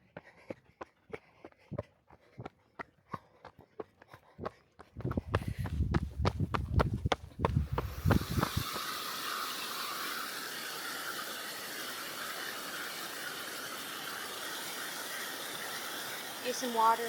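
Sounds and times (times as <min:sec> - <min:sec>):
running footsteps on trail: 0:00.0 - 0:09.0
creek rushing: 0:07.7 - 0:17.0.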